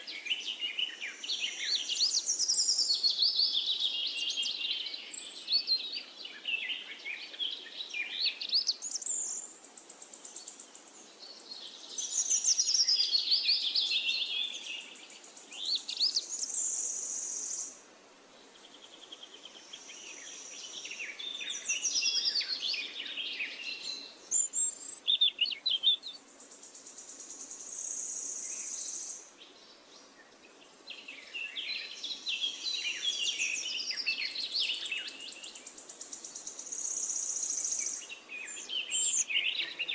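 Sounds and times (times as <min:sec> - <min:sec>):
songbird twittering and trilling: 0:00.0 - 0:17.8, 0:18.4 - 0:39.9.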